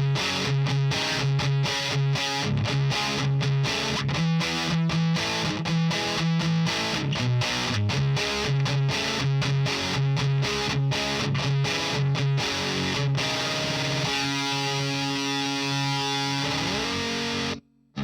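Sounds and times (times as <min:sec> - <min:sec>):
distorted electric guitar chugs: 0:00.0 - 0:18.0
held guitar chord ringing: 0:11.0 - 0:18.0.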